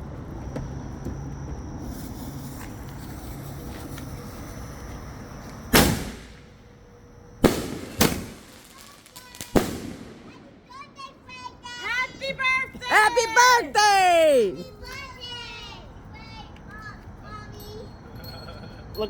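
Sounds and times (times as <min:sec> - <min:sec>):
fireworks bangs: 0:05.8 - 0:06.5, 0:07.4 - 0:10.6, 0:12.9 - 0:14.6.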